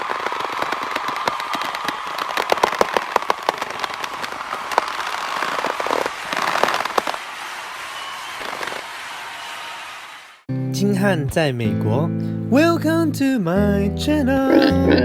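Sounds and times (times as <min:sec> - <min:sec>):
crackling sharp pops: 0:00.0 - 0:07.6, 0:08.3 - 0:08.9.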